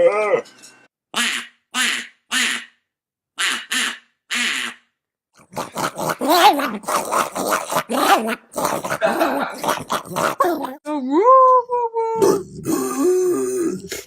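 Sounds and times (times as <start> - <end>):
animal quack-like honks: 1.2 - 2.8, 3.4 - 4.8
animal grunting and growling: 5.4 - 10.8, 12.2 - 14.0.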